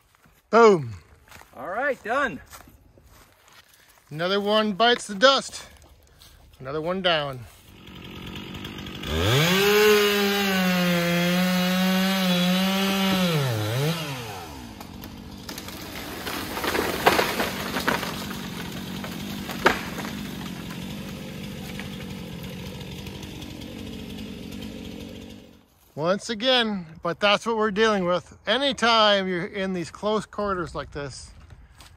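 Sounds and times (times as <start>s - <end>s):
chainsaw cutting wood: 7.4s - 25.7s
sharp cracks: 14.8s - 23.0s.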